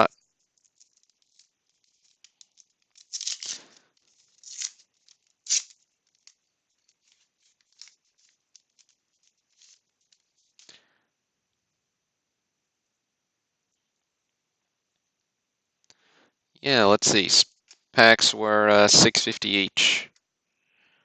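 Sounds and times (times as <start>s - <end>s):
foil card pack crinkling and tearing: 0.6s - 10.8s.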